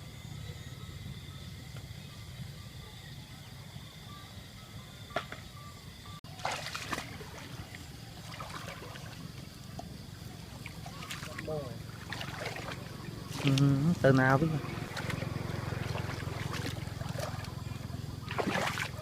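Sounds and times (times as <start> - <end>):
water splashing and trickling: 6.2 - 19.0.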